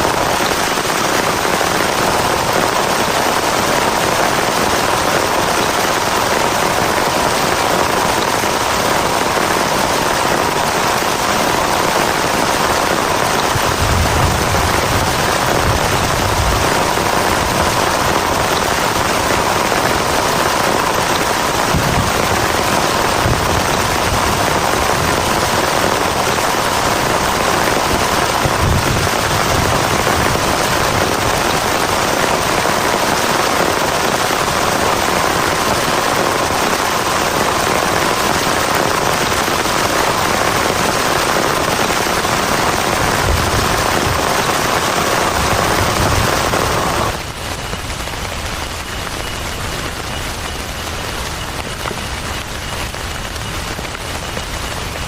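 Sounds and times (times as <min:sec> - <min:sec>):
heavy rain drumming on shelter: 0:00.0 - 0:55.0.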